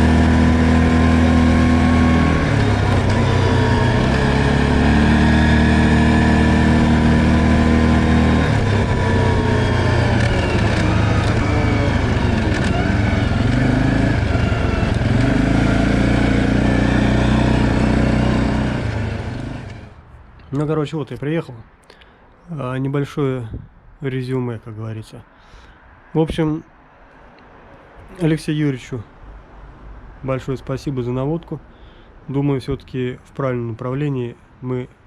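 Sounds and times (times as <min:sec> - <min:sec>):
atv engine running: 0:00.0 - 0:20.0.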